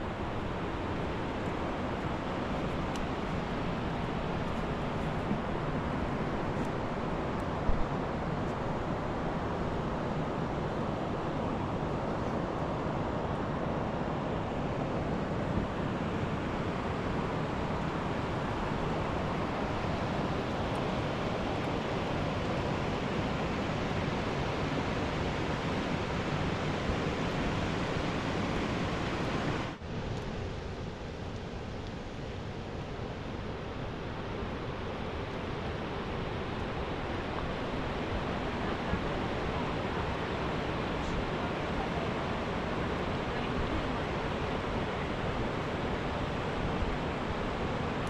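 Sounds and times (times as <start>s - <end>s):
river water rushing: 0.0s - 48.0s.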